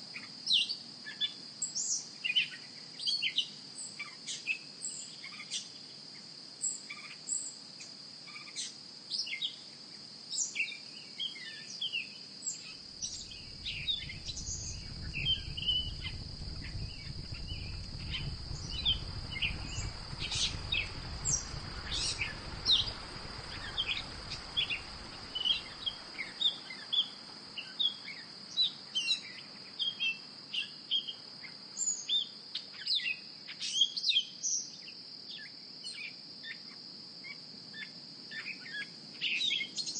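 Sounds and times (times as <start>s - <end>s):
high-pitched insect drone: 12.6s - 29.3s
low rumble: 12.9s - 26.4s
birds chirping: 13.0s - 27.2s.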